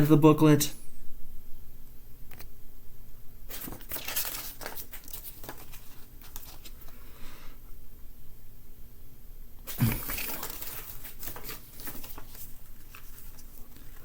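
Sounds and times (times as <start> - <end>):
paper pages rustling: 3.5 - 7.0, 9.7 - 14.0.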